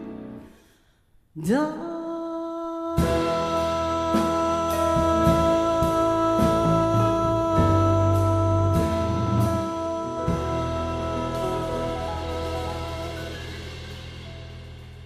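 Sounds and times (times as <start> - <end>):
bass line: 3.0 - 15.0
jazz band playing: 3.0 - 15.0.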